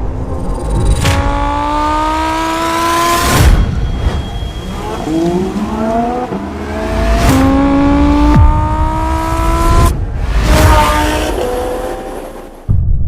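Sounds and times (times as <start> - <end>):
car engine accelerating hard: 1.0 - 3.3, 4.8 - 12.6.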